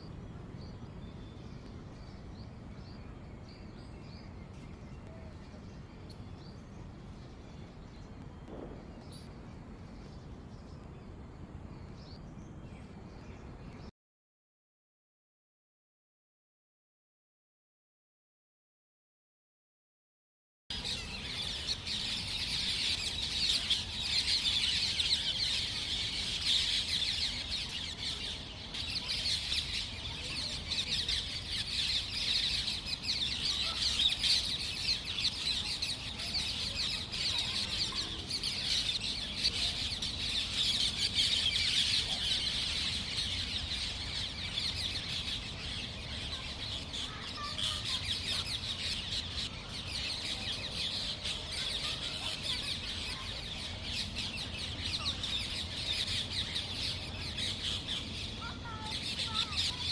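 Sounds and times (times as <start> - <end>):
faint low rumble: 0.0 - 13.9
small birds chirping: 0.0 - 13.9, 20.7 - 59.9.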